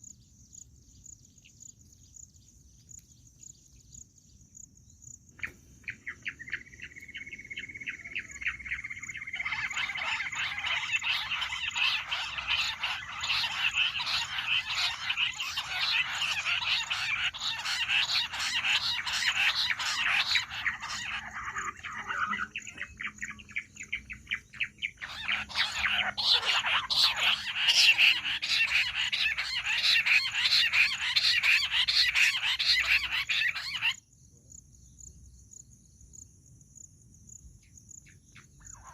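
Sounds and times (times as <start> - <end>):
quail whistled chattering calls: 5.4 - 34.0, 38.4 - 38.9.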